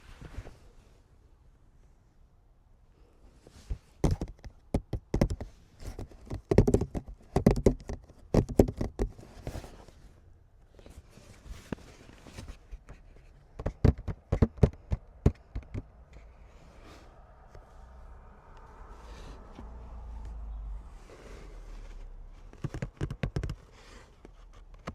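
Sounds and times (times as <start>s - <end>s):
sharp taps and clicks on cards: 4.0s - 9.1s, 13.5s - 16.0s, 22.5s - 23.7s.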